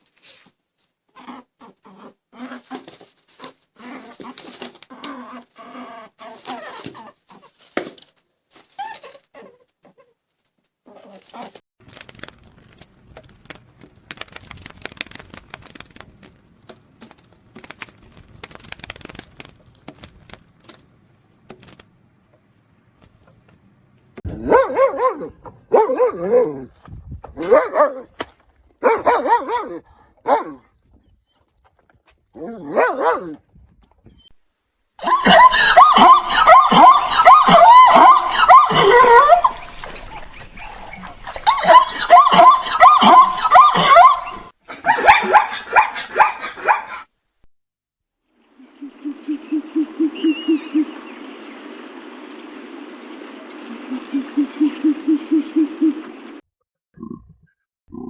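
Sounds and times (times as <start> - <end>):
rustling and clicking: 10.4 - 34.2
dog barking: 24.3 - 26.7, 27.4 - 28.2, 28.8 - 30.7, 32.4 - 33.4, 35.1 - 39.6, 41.5 - 47.1.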